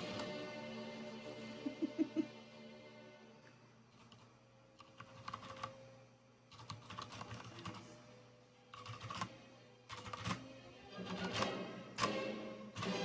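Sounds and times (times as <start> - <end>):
mechanical keyboard typing: 4.0 - 5.7, 6.5 - 7.8, 8.8 - 9.3, 9.9 - 10.4.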